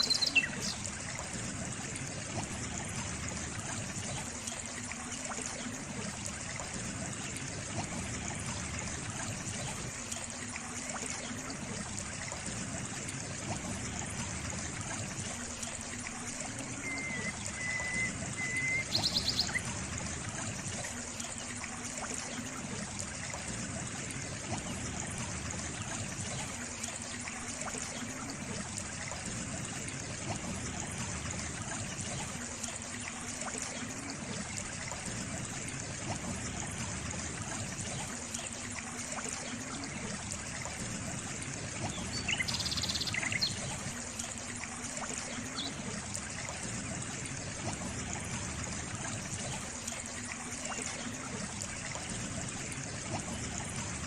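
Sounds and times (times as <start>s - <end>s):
bird chirping: 0.0s - 0.8s, 16.9s - 19.6s
water trickling: 0.0s - 54.0s.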